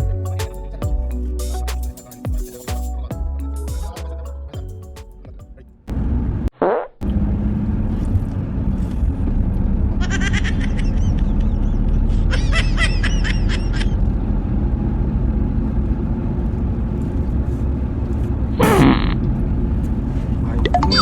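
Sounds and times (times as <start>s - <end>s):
car road rumble: 5.6s - 21.0s
raspy fart: 6.6s - 7.0s, 18.6s - 19.2s
short high chirps: 20.6s - 21.0s.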